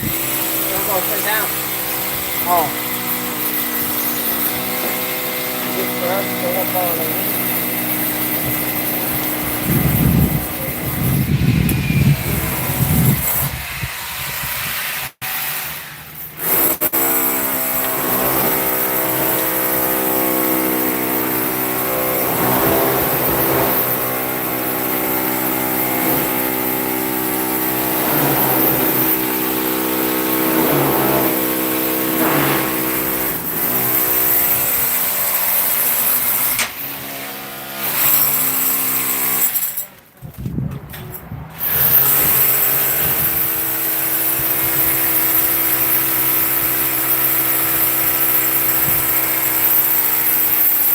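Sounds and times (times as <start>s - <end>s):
machine motor humming: 17.9s - 34.7s.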